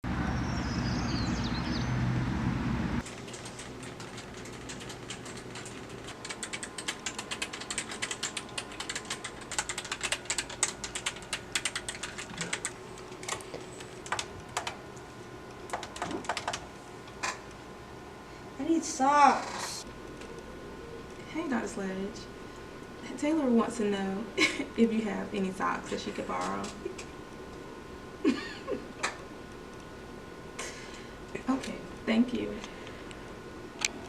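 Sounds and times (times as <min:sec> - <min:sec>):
loud rumbling with low hum: 0:00.0 - 0:03.0
typing on computer keyboard: 0:03.1 - 0:14.8, 0:15.7 - 0:16.6.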